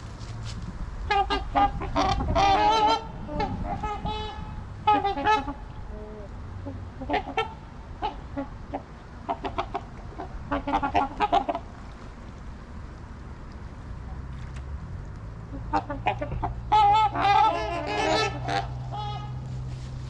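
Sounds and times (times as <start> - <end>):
swans honking: 1.0 - 11.9, 15.5 - 20.0.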